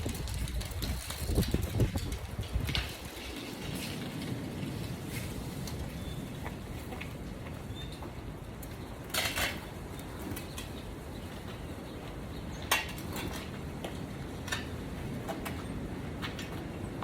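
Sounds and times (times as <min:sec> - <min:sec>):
sharp clatters and knocks: 0:00.0 - 0:05.8
wind rumbling on microphone: 0:00.0 - 0:17.0.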